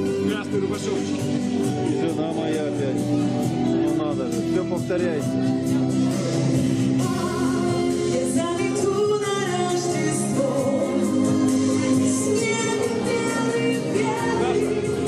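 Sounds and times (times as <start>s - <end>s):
instrumental backing: 0.0s - 15.0s
people singing: 6.1s - 15.0s.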